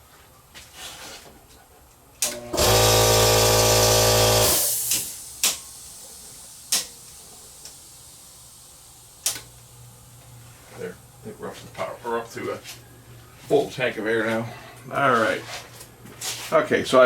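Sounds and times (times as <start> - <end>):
air compressor motor humming: 2.2 - 11.6.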